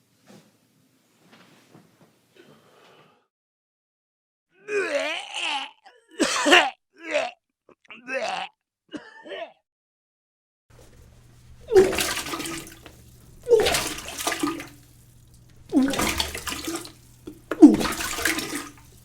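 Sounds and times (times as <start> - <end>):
person retching: 4.6 - 9.6
liquid splashing into water: 10.7 - 19.0
low steady hum: 10.8 - 19.0.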